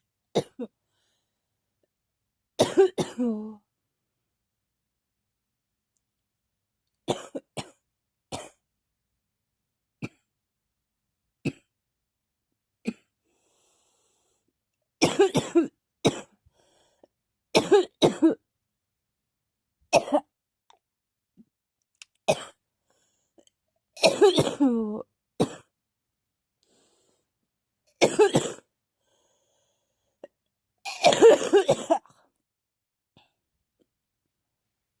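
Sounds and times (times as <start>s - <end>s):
person coughing: 0.4s - 0.7s, 2.6s - 3.6s, 7.1s - 7.8s, 15.0s - 16.4s, 17.6s - 18.4s, 22.3s - 22.6s, 24.0s - 25.7s, 28.0s - 28.7s, 30.9s - 32.2s.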